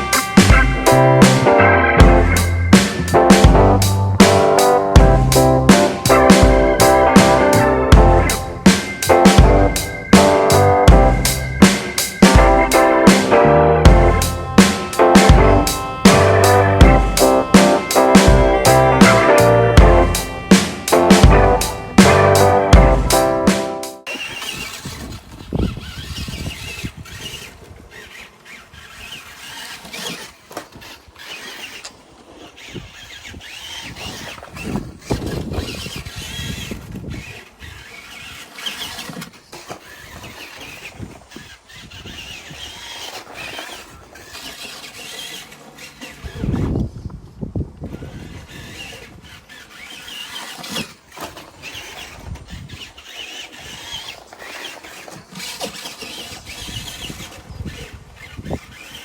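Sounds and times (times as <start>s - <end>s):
low rumbling bursts: 0.0s - 8.8s, 9.4s - 11.7s, 12.3s - 17.6s, 18.3s - 23.4s
electric motor whining: 0.0s - 59.0s.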